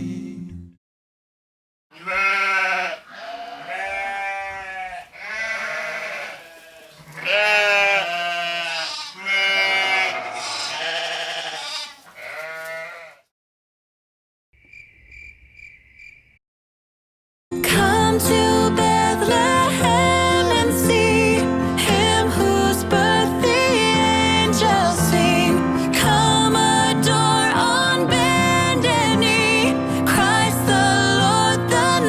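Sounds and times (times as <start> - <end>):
sheep bleating: 2.0 - 13.2.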